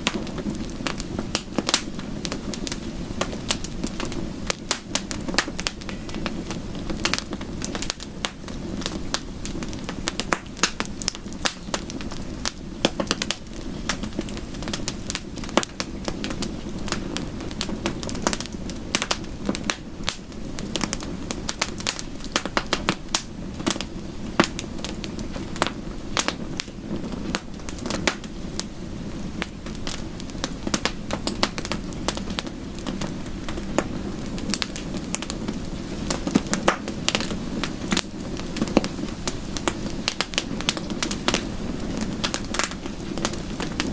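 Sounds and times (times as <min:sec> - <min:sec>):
low hiss of fire: 0:00.0 - 0:43.9
wood fire crackling: 0:00.0 - 0:43.9.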